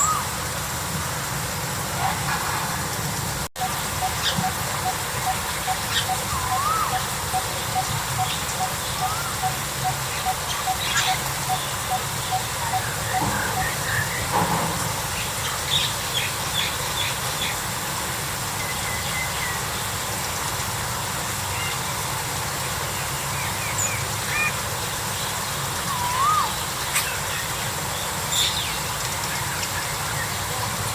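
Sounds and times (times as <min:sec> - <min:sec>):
birds chirping and trilling: 0:00.0 - 0:00.4, 0:03.6 - 0:17.8, 0:18.5 - 0:20.0, 0:22.8 - 0:30.7.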